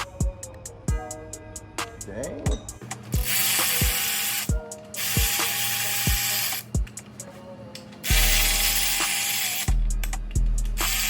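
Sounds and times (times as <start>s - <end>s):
power tool motor whine: 3.3s - 6.7s, 8.0s - 9.7s.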